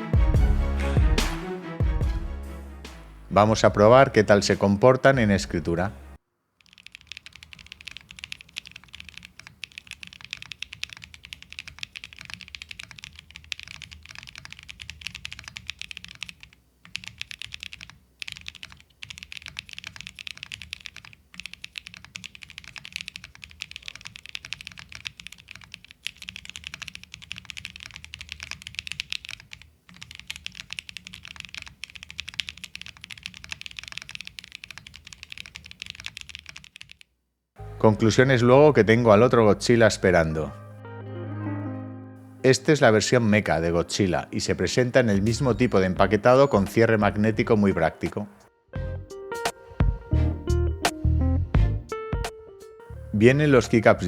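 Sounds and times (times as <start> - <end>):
fast typing on keyboard: 6.6 - 37.1, 45.0 - 48.2.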